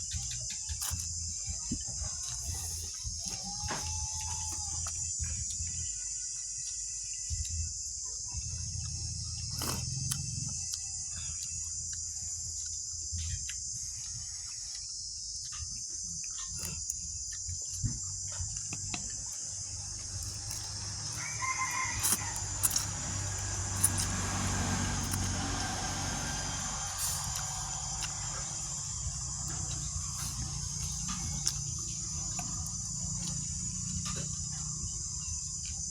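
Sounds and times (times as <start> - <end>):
low hum: 16.5 - 35.9.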